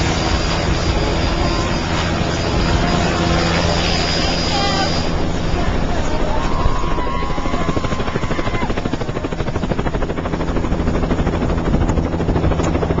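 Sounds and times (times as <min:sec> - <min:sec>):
thin high tone: 0:00.0 - 0:08.0
helicopter engine drone: 0:00.0 - 0:13.0
helicopter rotor chop: 0:00.0 - 0:13.0.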